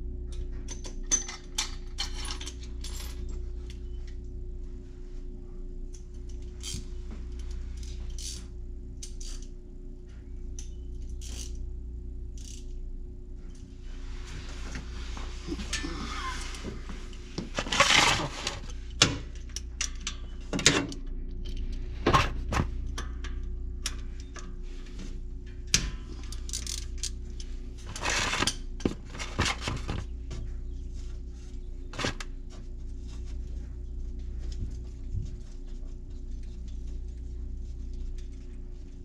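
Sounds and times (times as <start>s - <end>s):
allen wrench clinking and scraping: 5.9s - 9.5s, 12.4s - 12.7s, 26.2s - 28.6s.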